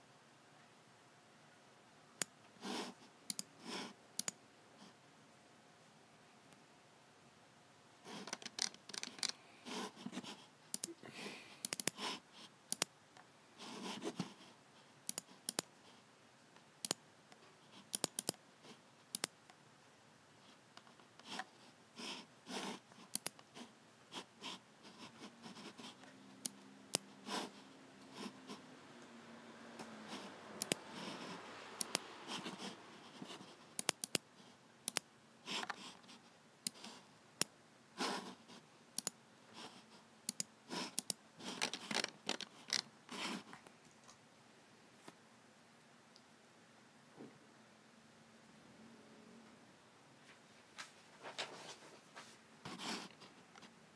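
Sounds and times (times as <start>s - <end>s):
mouse buttons clicking: 10.7s - 10.9s, 11.6s - 12.0s, 17.9s - 18.4s, 30.6s - 30.8s, 31.8s - 32.1s, 33.8s - 35.8s, 39.0s - 39.2s, 40.3s - 42.8s.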